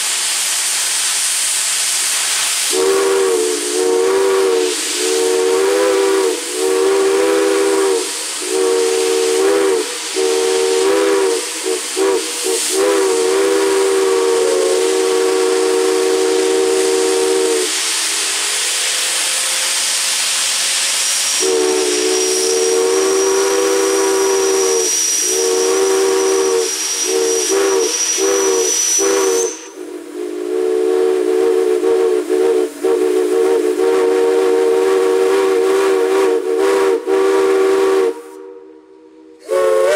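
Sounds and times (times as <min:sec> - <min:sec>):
steam hissing: 0:00.0 - 0:39.9
chime steam whistle: 0:02.6 - 0:39.9
thin high-pitched whistle: 0:21.2 - 0:29.8.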